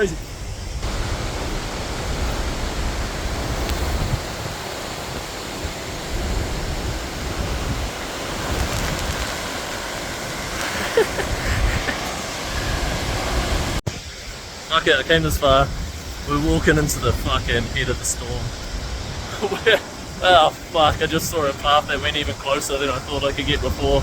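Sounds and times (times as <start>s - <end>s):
wind buffeting microphone: 0.0s - 24.0s
waterfall rushing: 0.8s - 15.2s.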